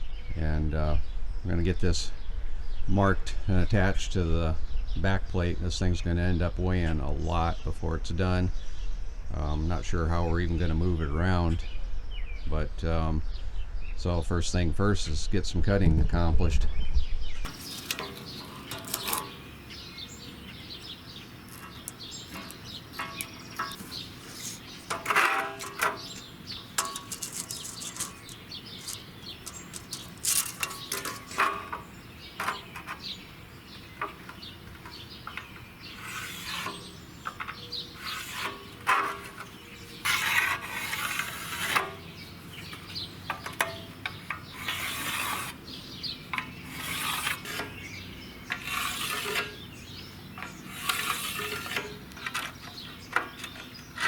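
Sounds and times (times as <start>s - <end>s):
metal tools clanking: 17.5s - 20.3s, 21.5s - 33.2s, 33.9s - 42.1s.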